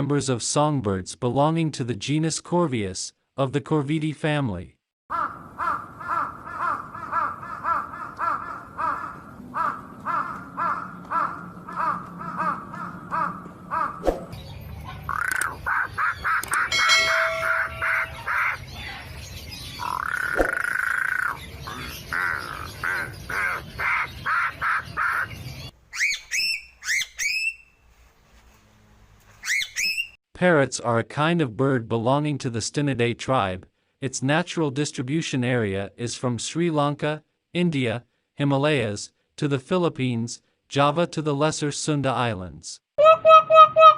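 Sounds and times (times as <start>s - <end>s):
crows cawing: 5.1s - 14.0s, 15.1s - 18.6s, 19.8s - 25.3s.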